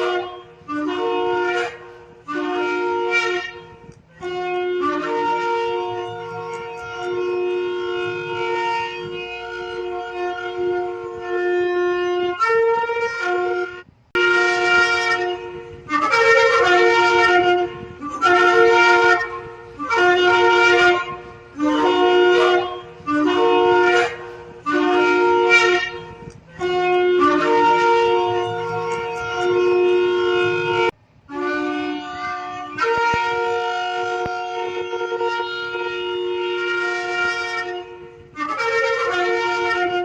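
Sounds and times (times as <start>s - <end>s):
ram's horn blasts: 0.0s - 40.0s.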